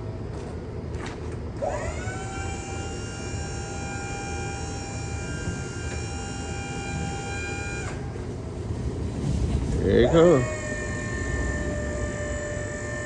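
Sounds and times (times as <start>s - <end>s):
electric motor whine: 1.6s - 8.2s, 10.0s - 13.0s.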